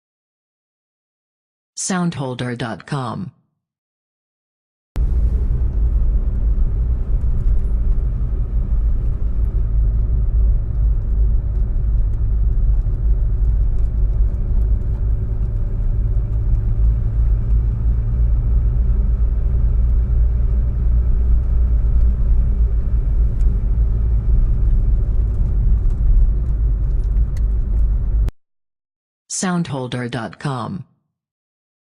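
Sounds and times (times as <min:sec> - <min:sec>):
engine and road rumble: 0:05.0 - 0:28.3.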